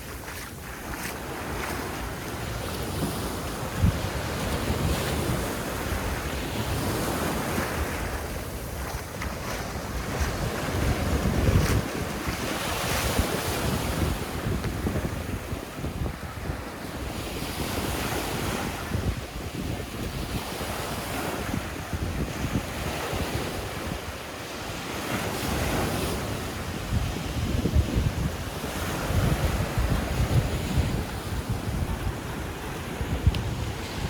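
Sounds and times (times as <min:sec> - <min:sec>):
sea waves breaking: 0:00.0 - 0:15.1
wind rumbling on microphone: 0:00.0 - 0:34.0.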